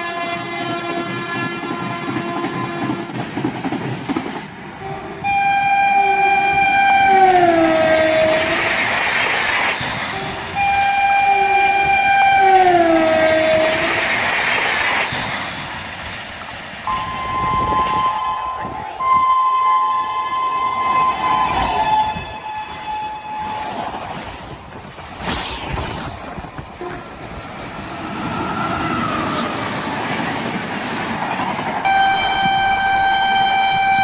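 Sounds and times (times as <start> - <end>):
train horn blasts: 0.0 - 3.1, 4.8 - 8.8, 10.1 - 14.0, 16.9 - 24.0, 26.8 - 27.2, 31.8 - 34.0
moving train rushing and clattering: 0.0 - 34.0
high single-note tone: 16.9 - 23.6.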